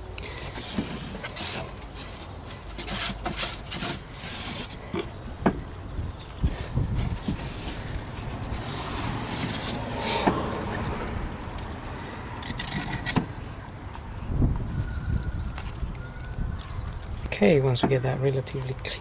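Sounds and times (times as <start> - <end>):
leaves scraped and rustled by hand: 0.3 - 4.9, 6.9 - 16.0.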